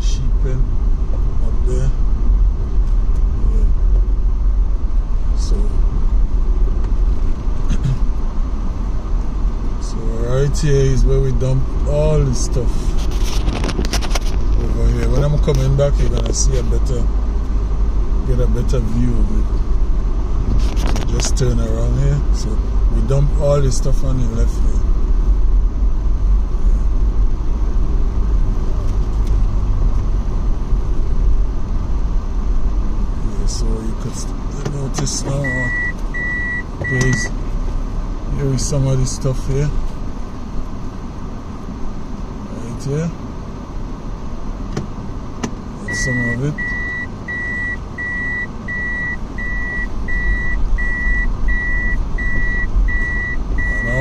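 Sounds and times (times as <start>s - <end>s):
vehicle engine and road rumble: 0.0s - 54.0s
reversing beeper: 35.4s - 37.3s, 45.9s - 54.0s.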